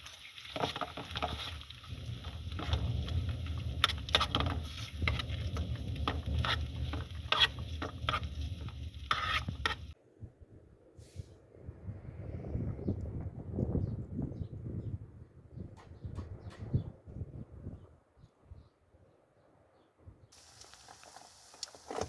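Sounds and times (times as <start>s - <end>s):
utensil scraping frying pan: 0.0s - 10.0s.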